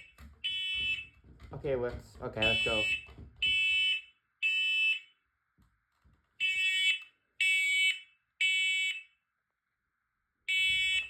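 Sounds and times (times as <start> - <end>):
smoke alarm high-pitched beeps: 0.0 - 1.1, 2.4 - 5.2, 10.5 - 11.0.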